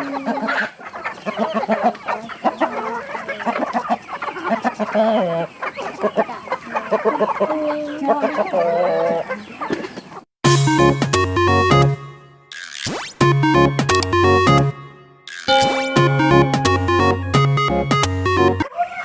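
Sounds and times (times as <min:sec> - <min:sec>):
chickens clucking: 0:00.0 - 0:10.3, 0:15.4 - 0:19.0.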